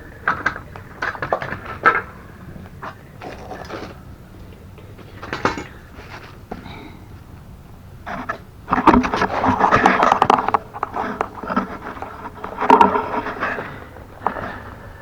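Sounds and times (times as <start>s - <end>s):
tools and metal parts clattering: 4.8s - 7.0s.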